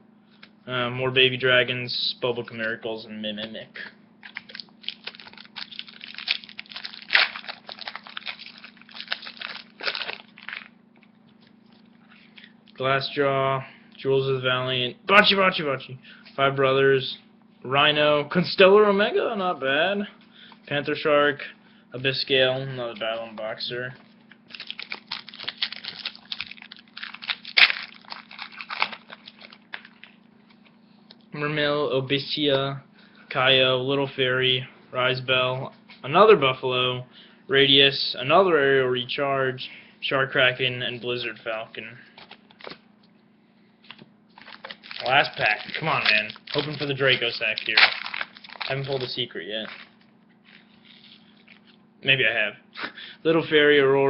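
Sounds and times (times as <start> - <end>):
foil wrapper ripping: 4.2 - 10.7, 24.5 - 30.2, 44.4 - 51.8
foil wrapper crinkling: 4.2 - 10.8, 24.5 - 30.2, 42.2 - 42.8, 43.9 - 51.8.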